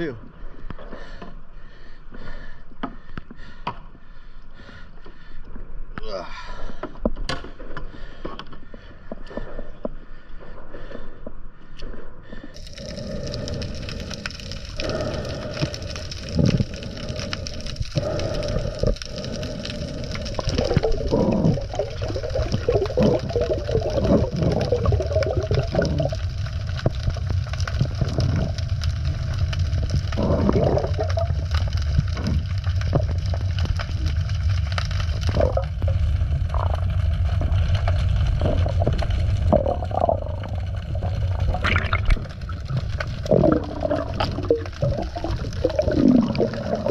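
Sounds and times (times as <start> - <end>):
bubbling bursts: 12.6 - 46.9
underwater low rumble: 12.6 - 46.9
water sloshing and gurgling: 12.6 - 46.9.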